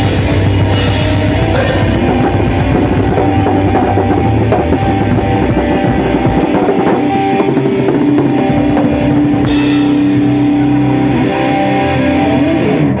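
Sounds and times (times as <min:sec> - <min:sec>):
heavy metal band music: 0:00.0 - 0:13.0
cymbal crash: 0:09.4 - 0:11.1.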